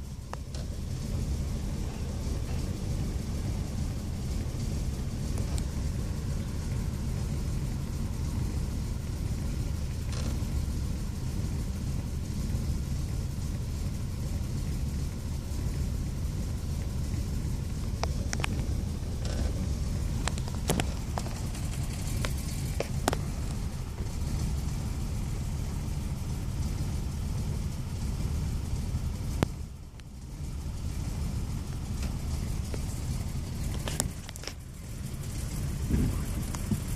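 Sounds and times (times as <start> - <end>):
misfiring car engine rumble: 0.0 - 36.9.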